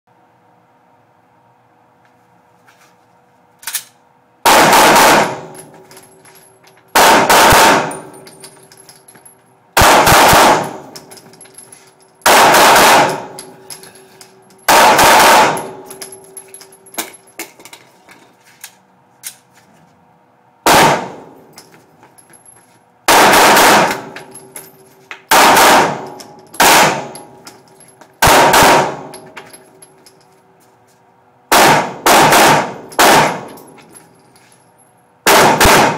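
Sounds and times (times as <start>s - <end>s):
pistol shots: 4.4s - 5.6s, 7.0s - 8.1s, 9.8s - 10.9s, 12.2s - 13.4s, 14.7s - 15.8s, 20.7s - 21.3s, 23.1s - 24.2s, 25.3s - 27.2s, 28.2s - 29.1s, 31.5s - 33.6s, 35.2s - 35.9s.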